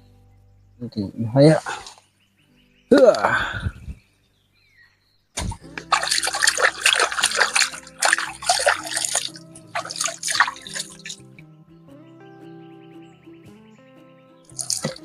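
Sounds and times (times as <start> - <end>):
background music: 0.0 - 3.6, 5.4 - 15.0
water splashing and sloshing: 5.4 - 11.4, 14.5 - 15.0.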